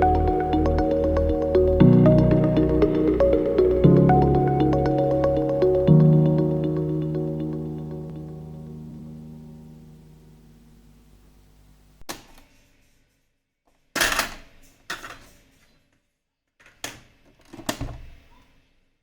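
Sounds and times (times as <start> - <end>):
music: 0.0 - 10.5.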